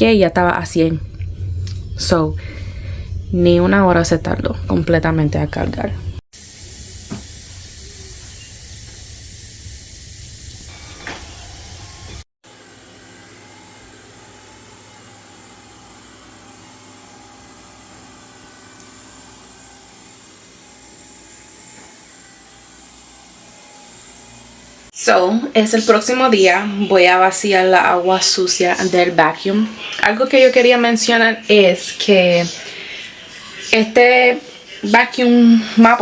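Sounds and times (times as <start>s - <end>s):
robot vacuum motor hum: 10.7s - 24.9s.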